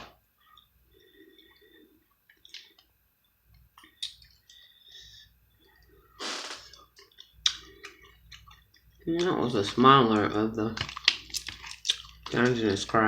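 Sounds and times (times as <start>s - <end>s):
wet squishing: 0.4s - 5.1s, 6.7s - 13.0s
crab shell cracking: 6.7s - 12.8s.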